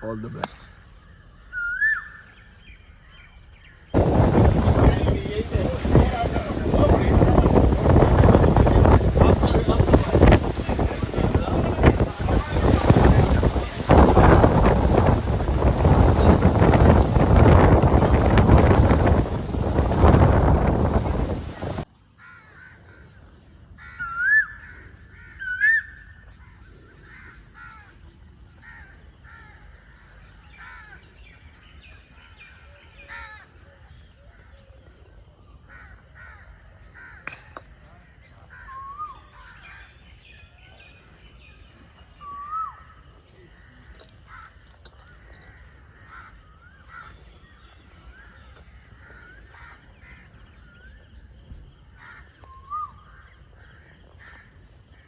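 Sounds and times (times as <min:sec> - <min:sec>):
high pulsing bird trill: 0:38.1 - 0:44.7.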